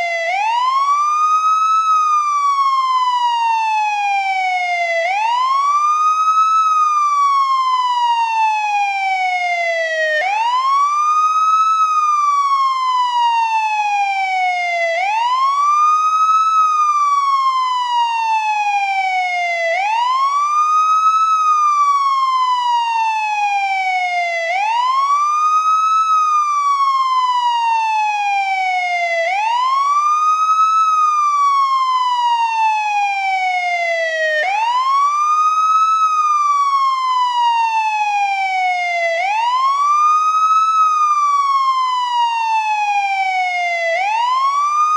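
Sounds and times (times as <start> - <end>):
police siren wailing: 0.0 - 44.9.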